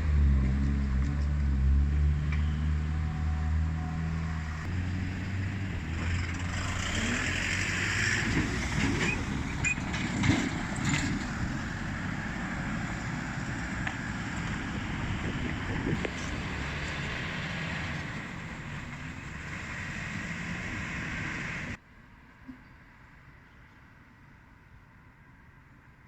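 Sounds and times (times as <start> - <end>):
vehicle engine idling: 0.0 - 21.8
vehicles driving past: 0.0 - 21.8.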